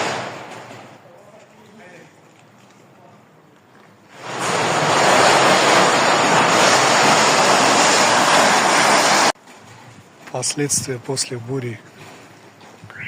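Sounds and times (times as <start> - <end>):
loud steady rushing noise: 4.2 - 9.4.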